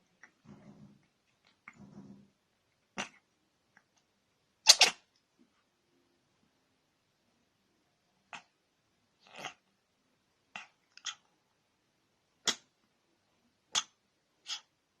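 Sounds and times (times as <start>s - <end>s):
cat sneezing: 4.7s - 5.0s.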